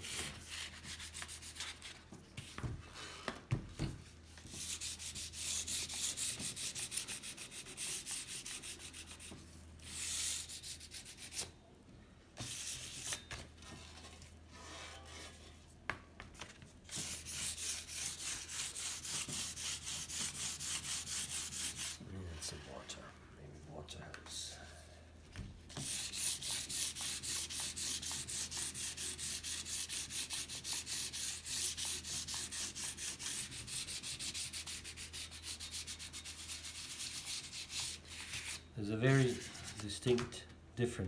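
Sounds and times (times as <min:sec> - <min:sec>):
sandpaper rubbing on metal: 0:04.6 - 0:09.2, 0:17.0 - 0:22.6, 0:25.8 - 0:40.0.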